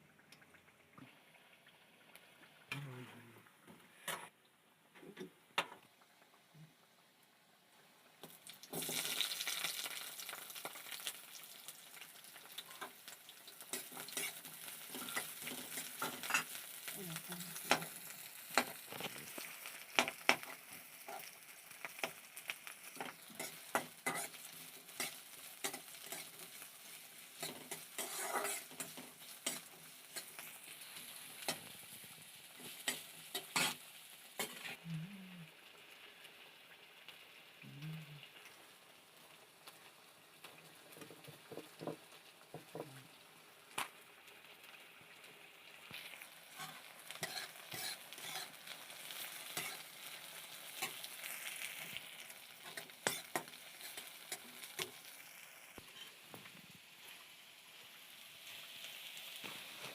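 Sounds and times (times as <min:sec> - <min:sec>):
food sizzling in hot oil: 0:07.9 - 0:59.9
utensil scraping a pan: 0:27.4 - 0:30.5, 0:46.6 - 0:48.6.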